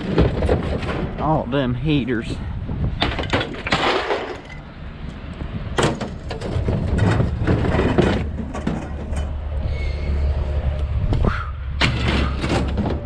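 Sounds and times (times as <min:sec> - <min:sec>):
scrap metal clanking: 0:00.0 - 0:01.4, 0:03.0 - 0:04.7, 0:05.8 - 0:09.5, 0:11.8 - 0:13.0
low steady rumble: 0:00.1 - 0:13.0.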